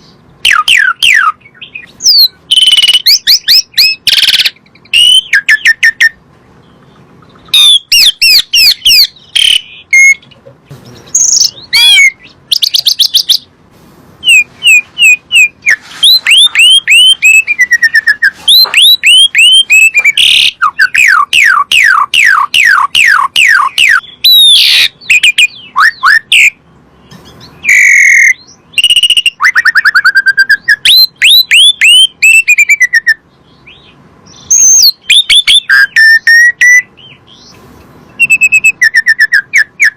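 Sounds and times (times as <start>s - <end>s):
starling singing whistled notes: 0.0s - 13.5s, 14.2s - 39.9s.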